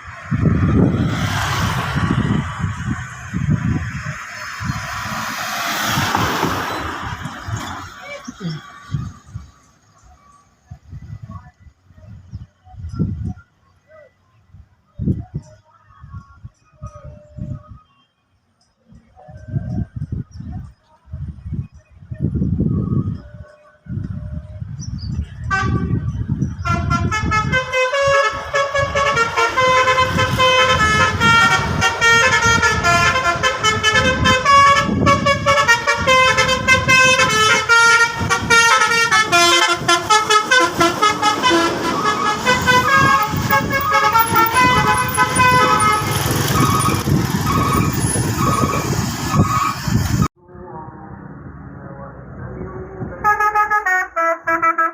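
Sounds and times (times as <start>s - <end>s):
bus engine rumble: 0.0s - 54.9s
multi-tone air horn melody: 25.4s - 48.9s, 53.2s - 54.9s.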